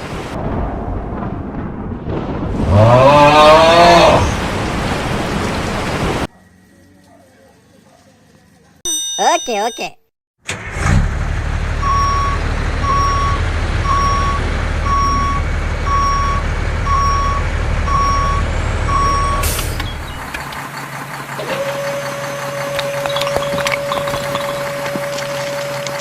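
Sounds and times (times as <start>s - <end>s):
low motor hum: 10.9s - 26.0s
reversing alarm beeping: 11.8s - 20.0s, 21.6s - 25.9s.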